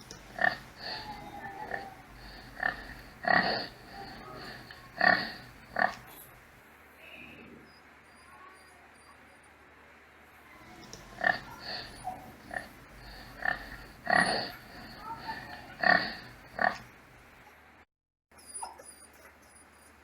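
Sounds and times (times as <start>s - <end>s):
pigs grunting: 0.0s - 7.8s, 10.6s - 17.1s
faint bird chirps: 6.9s - 9.8s.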